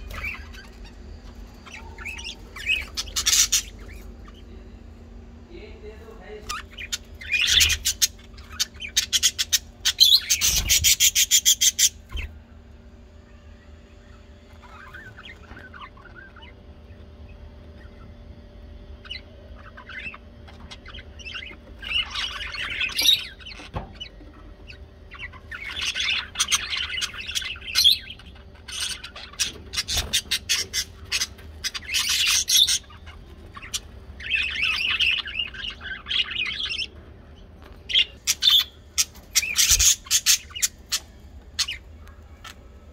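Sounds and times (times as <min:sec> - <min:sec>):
bird chattering: 0:00.0 - 0:04.8, 0:06.5 - 0:12.2, 0:18.9 - 0:37.0, 0:37.8 - 0:42.7
faint steady hum: 0:00.0 - 0:42.9.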